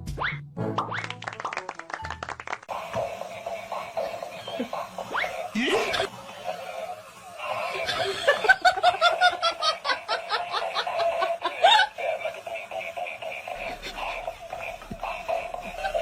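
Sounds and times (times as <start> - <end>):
person laughing: 3.2 - 16.0.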